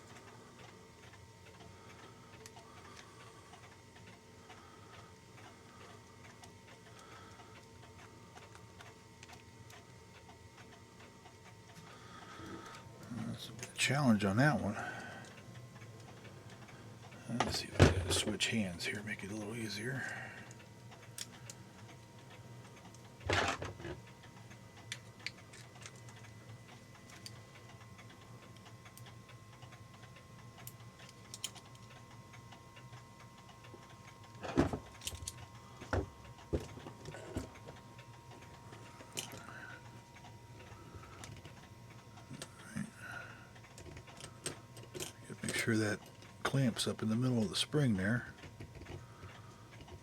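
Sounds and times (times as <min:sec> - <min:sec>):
small metallic clicks and taps: 0:48.4 - 0:50.0.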